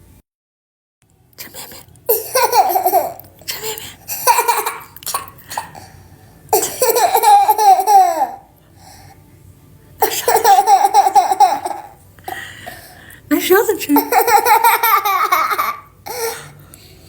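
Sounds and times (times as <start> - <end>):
young child laughing: 14.0 - 16.3.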